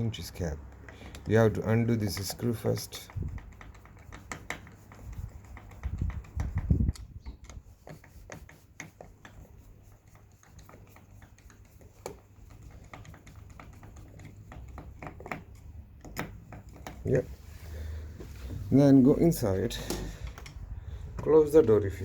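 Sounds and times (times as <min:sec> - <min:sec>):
screwdriver clicks and scrapes: 0:00.2 - 0:09.5, 0:10.1 - 0:17.2.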